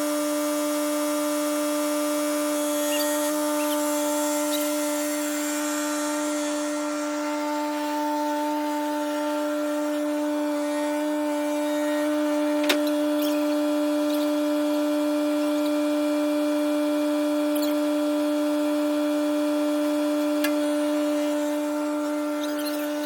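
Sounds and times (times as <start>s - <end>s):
tractor engine whining: 2.6s - 13.5s.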